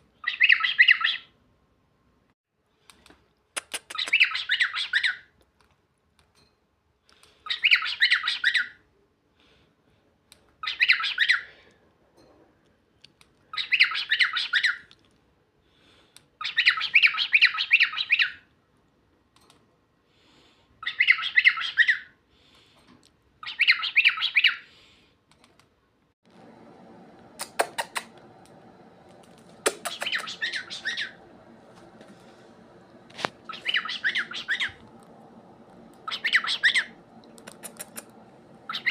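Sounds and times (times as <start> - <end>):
steady hum: 26.2 - 38.9
cockatiel vocalizing: 27.4 - 28.2, 29.6 - 31.2, 33.5 - 34.8, 36.0 - 38.1, 38.7 - 38.9
sharp clicks: 27.4 - 30.4, 37.2 - 38.2.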